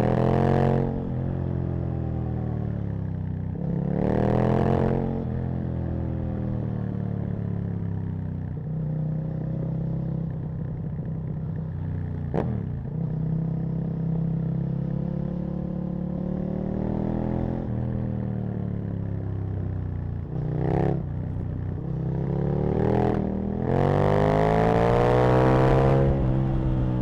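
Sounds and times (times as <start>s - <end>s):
motorcycle engine revving: 7.4s - 27.0s.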